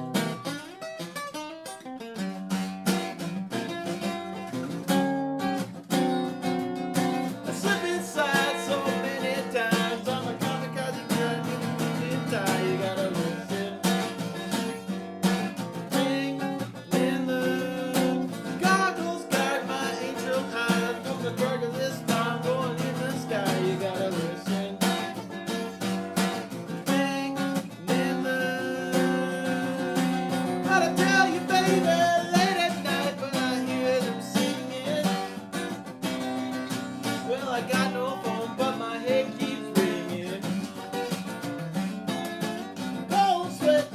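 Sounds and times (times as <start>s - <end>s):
acoustic guitar picking: 0.0s - 43.9s.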